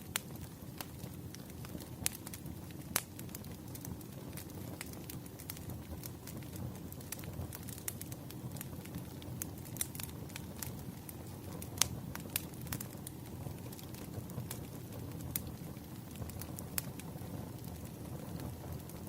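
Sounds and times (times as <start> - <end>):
burning wood popping: 0.0 - 19.0
campfire crackling: 0.0 - 19.0.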